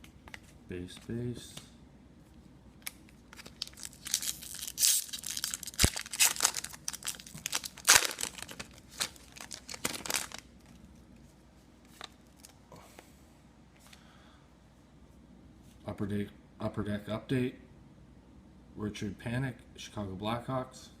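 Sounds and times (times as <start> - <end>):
foil wrapper tearing and crinkling: 2.8 - 10.7.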